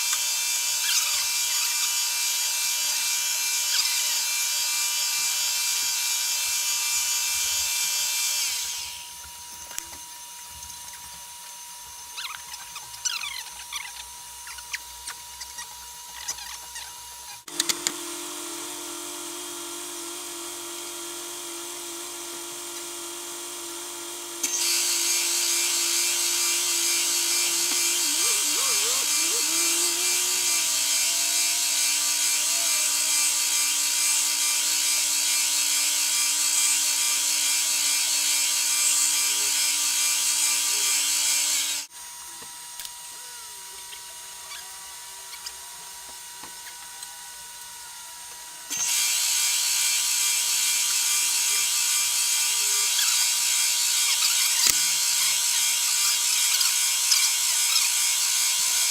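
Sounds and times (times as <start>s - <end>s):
milling machine cutting wood: 16.3s - 41.9s, 48.7s - 58.9s.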